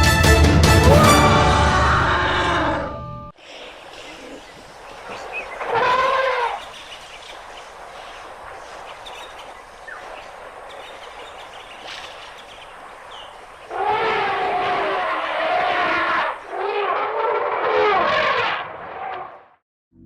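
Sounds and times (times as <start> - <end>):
elephant trumpeting: 0.9 - 3.2, 4.1 - 6.7, 13.5 - 19.4.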